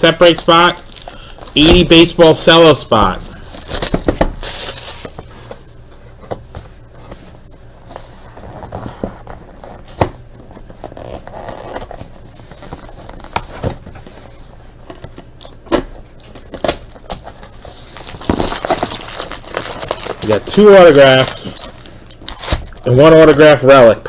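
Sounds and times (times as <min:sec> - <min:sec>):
cardboard and plastic wrap crinkling: 0:00.0 - 0:24.0.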